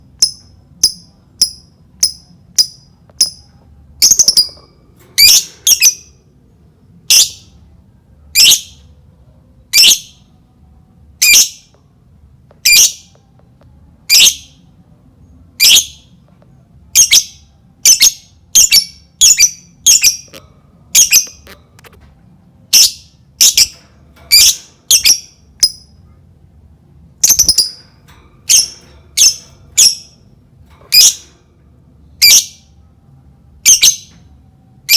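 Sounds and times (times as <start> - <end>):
lovebird squawking chirps: 24.3 - 25.8, 30.9 - 31.3.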